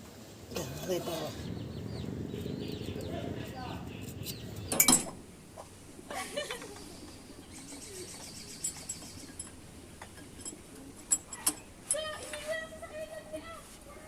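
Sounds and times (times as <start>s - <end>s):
birds chirping and calling: 0.6s - 5.8s, 6.4s - 10.3s.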